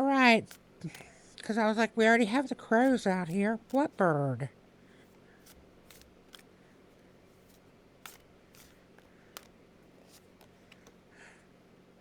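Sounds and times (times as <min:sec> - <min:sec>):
cards clicking and tapping: 0:00.4 - 0:01.2, 0:02.4 - 0:04.0, 0:05.0 - 0:11.1.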